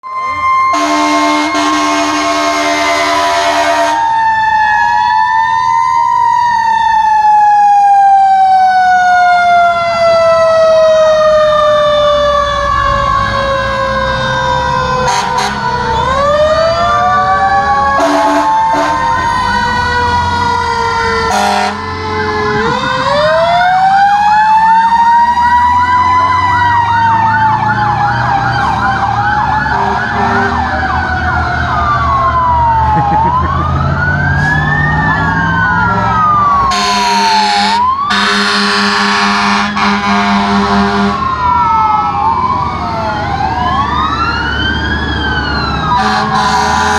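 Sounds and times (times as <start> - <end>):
fire truck sirens wailing: 0.0 - 46.9
truck engines rumbling: 0.0 - 46.9
loud harsh horn blast: 0.7 - 4.0, 15.0 - 15.8, 18.0 - 20.3, 21.2 - 22.8, 29.7 - 30.8, 35.9 - 41.2, 46.0 - 46.9.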